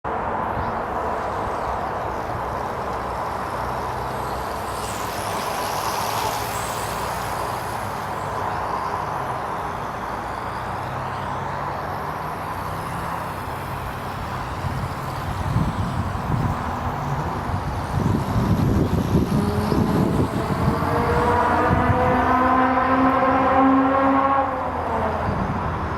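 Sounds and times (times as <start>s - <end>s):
quadcopter motors buzzing: 0.2s - 25.9s
wind buffeting microphone: 13.3s - 24.1s, 24.8s - 25.9s.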